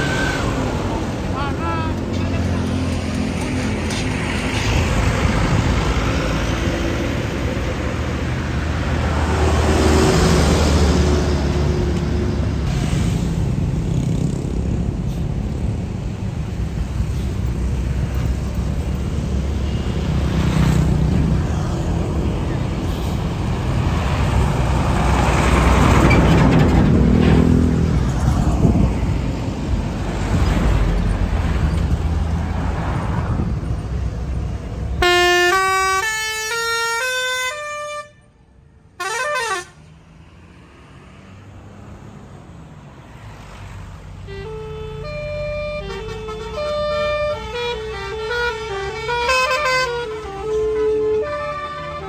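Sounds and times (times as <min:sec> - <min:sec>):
bus engine running loud: 0:00.0 - 0:36.0
musical bus horn playing a tune: 0:35.0 - 0:38.4, 0:39.0 - 0:39.9, 0:44.2 - 0:52.0.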